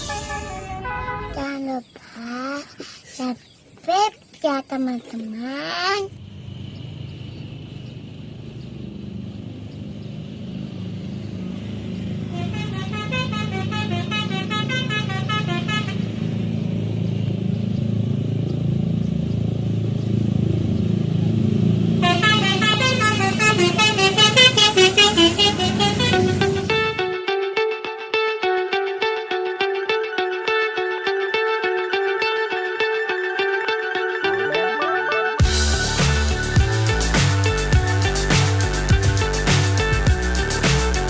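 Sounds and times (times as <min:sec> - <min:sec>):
bus horn playing rapid notes: 0:00.0 - 0:01.4, 0:12.2 - 0:16.4, 0:22.0 - 0:27.6
bus engine rumble: 0:00.0 - 0:27.1
music with guitar: 0:25.9 - 0:41.0.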